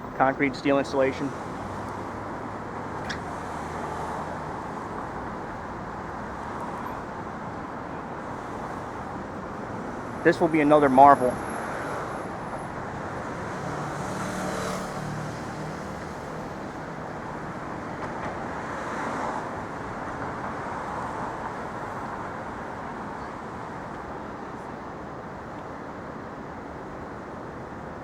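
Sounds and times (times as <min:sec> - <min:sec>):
city street traffic: 0:00.0 - 0:28.0
vehicle passing: 0:00.1 - 0:06.9, 0:09.8 - 0:17.0.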